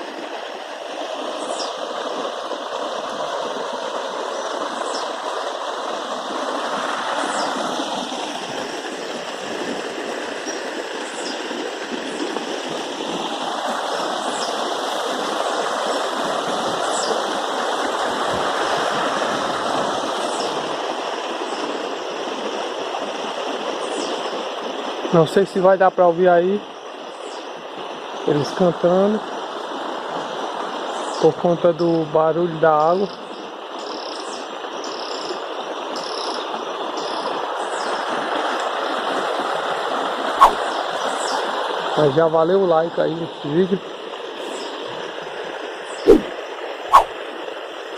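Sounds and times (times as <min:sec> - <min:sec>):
running water rushing: 0:00.0 - 0:47.9
short high chirps: 0:46.9 - 0:47.1.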